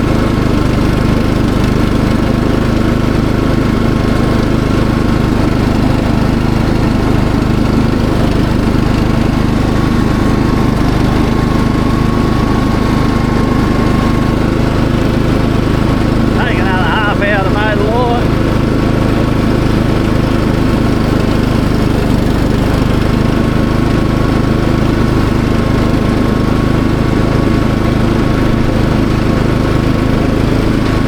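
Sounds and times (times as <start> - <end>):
ride-on mower engine hum: 0.0 - 31.0
faint steady whine: 4.8 - 18.8.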